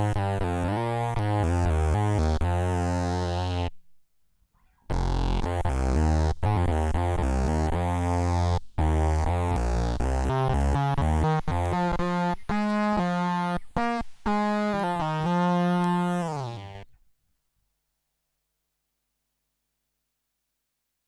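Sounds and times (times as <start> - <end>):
buzzy synth bass notes: 0.0 - 3.8, 4.9 - 16.8.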